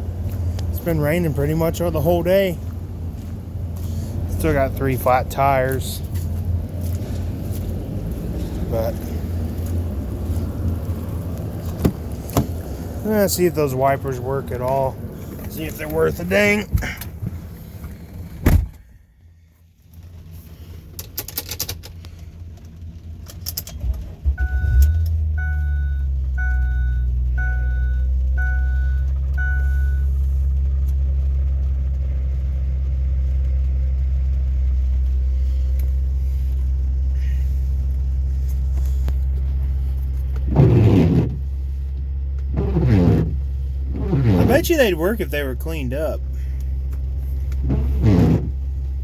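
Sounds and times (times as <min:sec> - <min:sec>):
car engine cranking and idling: 0:00.0 - 0:49.0
warning chime beeping: 0:24.4 - 0:30.1.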